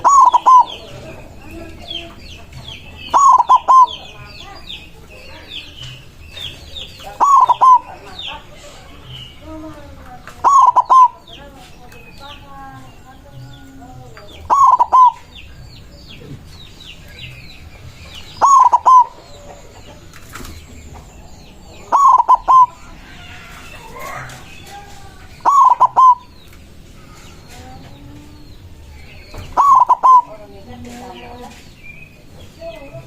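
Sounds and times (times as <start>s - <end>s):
dove cooing: 0.0s - 4.6s, 7.0s - 8.8s, 10.3s - 11.4s, 14.0s - 15.3s, 18.3s - 20.1s, 21.8s - 23.0s, 25.4s - 26.3s, 29.4s - 30.9s.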